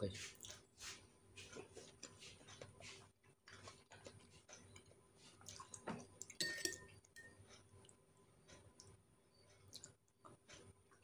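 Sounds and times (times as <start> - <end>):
cutlery clinking on a plate: 6.3 - 7.4.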